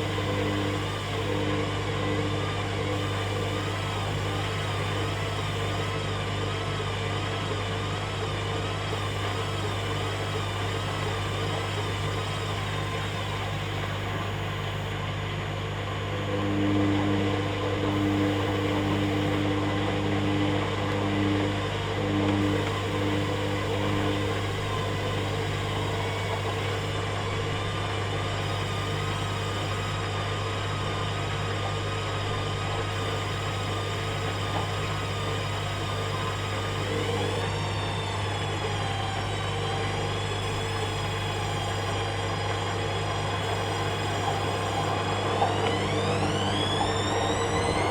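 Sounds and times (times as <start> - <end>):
steady machine tones: 0.0 - 1.7, 2.8 - 6.0, 8.9 - 15.0, 17.8 - 19.6, 22.0 - 27.2, 28.2 - 30.1, 32.8 - 47.9
motor whine wavering in pitch: 0.0 - 15.2, 15.9 - 47.9
washing machine hum: 0.0 - 15.2, 16.3 - 47.9.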